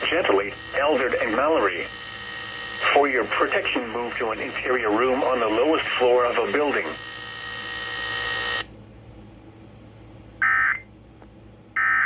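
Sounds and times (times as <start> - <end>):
steady buzzing tone: 0.0 - 8.7, 10.4 - 10.9.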